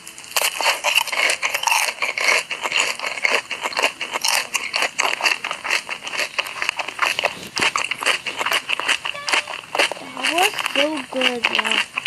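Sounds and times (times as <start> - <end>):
crunchy food being chewed: 0.0 - 12.0.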